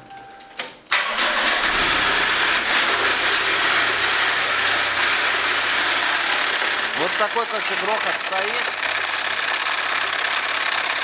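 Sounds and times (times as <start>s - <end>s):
car engine starting: 0.9s - 7.3s
engine knocking loudly: 1.6s - 11.0s.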